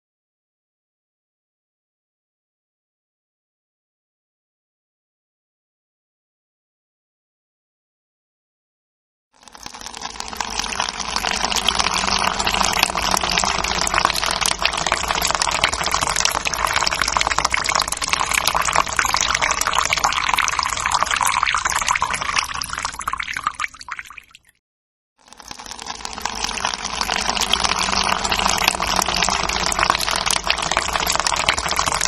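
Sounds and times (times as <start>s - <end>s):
urine splashing into toilet water: 9.5s - 24.5s, 25.3s - 32.0s.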